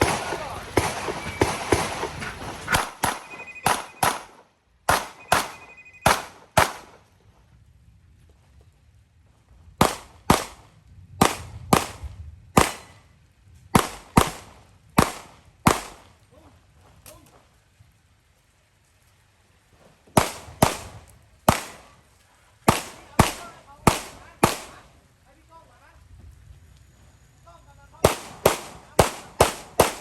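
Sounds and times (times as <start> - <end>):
handgun shots: 2.7 - 4.3, 4.9 - 6.9
brief ringing tone: 3.2 - 4.0, 5.2 - 6.1.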